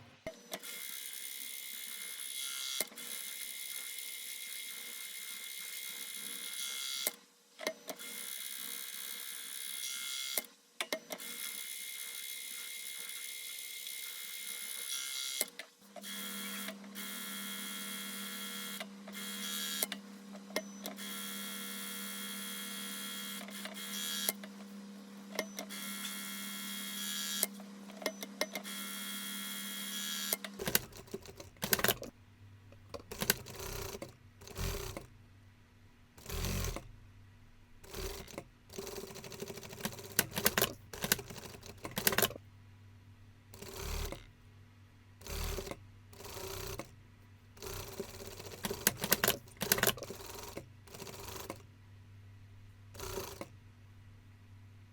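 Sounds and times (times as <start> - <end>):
sewing machine clicks: 30.3 - 32.1, 32.7 - 35.1, 36.2 - 36.9, 37.9 - 42.4, 43.6 - 44.3, 45.2 - 46.9, 47.6 - 51.6, 53.0 - 53.5
sewing machine running: 30.6 - 32.1, 32.9 - 35.1, 36.2 - 36.9, 37.8 - 42.4, 43.6 - 44.3, 45.2 - 46.9, 47.6 - 51.6, 53.0 - 53.5.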